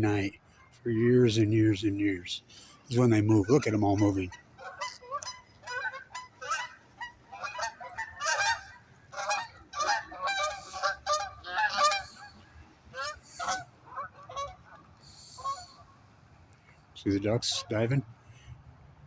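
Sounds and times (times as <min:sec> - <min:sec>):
waterfowl honking: 0:02.4 - 0:16.2, 0:17.1 - 0:18.0.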